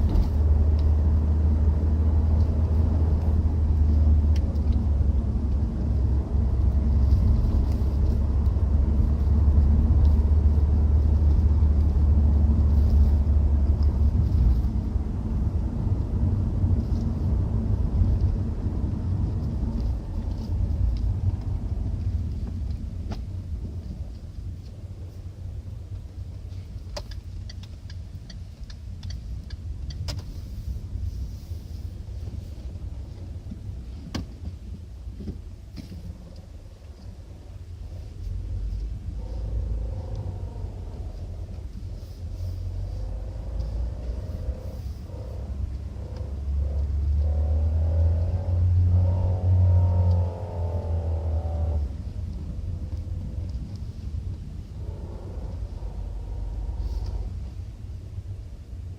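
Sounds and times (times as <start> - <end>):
car engine rumbling: 0.0 - 58.9
faint drone: 37.9 - 58.9.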